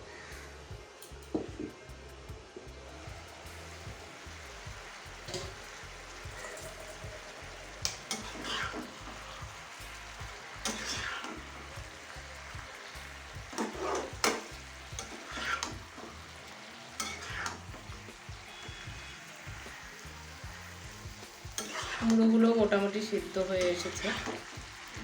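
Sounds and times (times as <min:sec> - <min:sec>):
vegetables sizzling in oil: 0:00.1 - 0:25.0
spatula scraping: 0:07.8 - 0:09.4, 0:10.6 - 0:11.8, 0:13.4 - 0:22.3.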